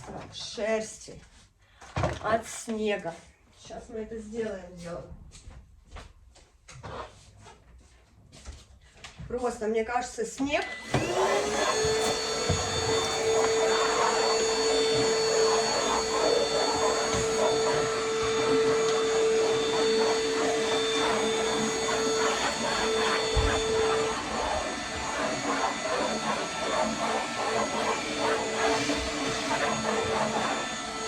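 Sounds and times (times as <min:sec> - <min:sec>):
vacuum cleaner whine: 0:10.4 - 0:31.0.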